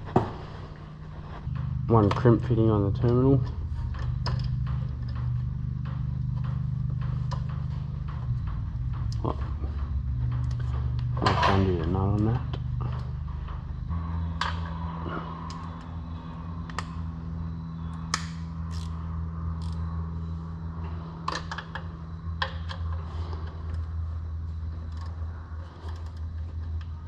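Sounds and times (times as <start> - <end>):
steady low hum: 0.0 - 27.0
spanner clicking on nut: 18.0 - 19.0, 19.6 - 19.9.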